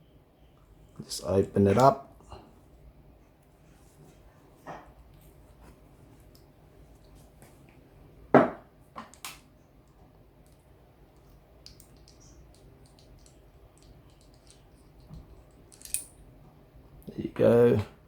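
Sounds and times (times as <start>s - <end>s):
small ticks of parts handled: 11.6s - 16.1s.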